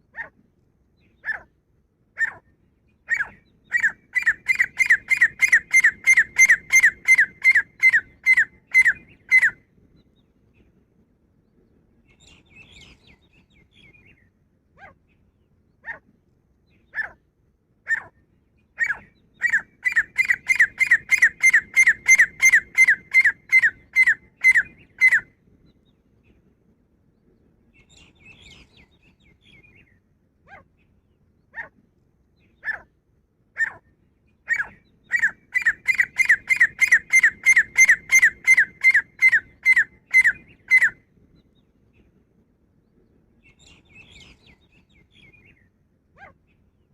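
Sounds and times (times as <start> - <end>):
bird calling sharp ringing notes: 3.8 - 9.6
soft bird chatter: 27.1 - 31.7, 42.8 - 46.9.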